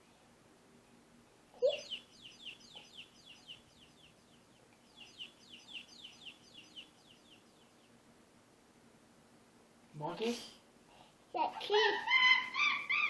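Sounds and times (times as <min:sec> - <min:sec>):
baby chick peeping: 0:01.5 - 0:08.0, 0:11.3 - 0:13.0.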